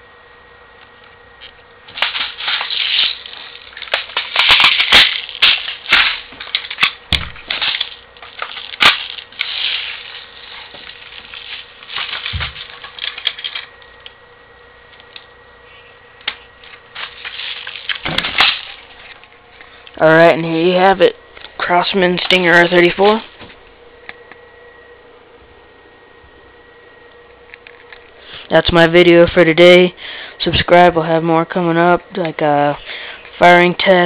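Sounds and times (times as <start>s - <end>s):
rifle parts clicking and rattling: 1.4s - 14.1s.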